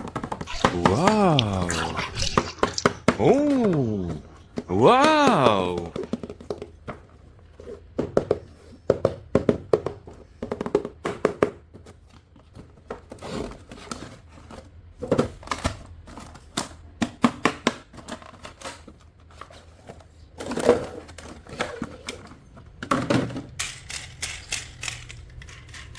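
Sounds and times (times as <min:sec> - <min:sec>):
plastic toys clicking and tapping: 0:23.6 - 0:25.9.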